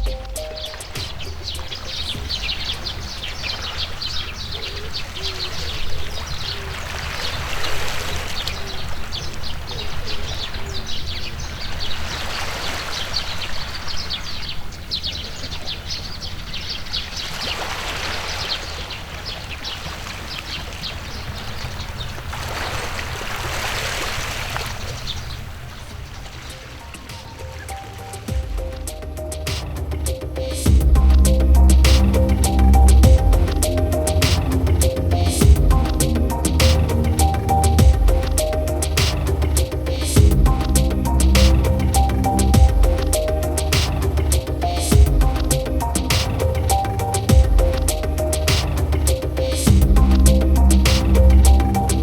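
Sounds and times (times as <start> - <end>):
small birds chirping: 0.0 - 22.7, 24.0 - 52.0
running water: 16.9 - 52.0.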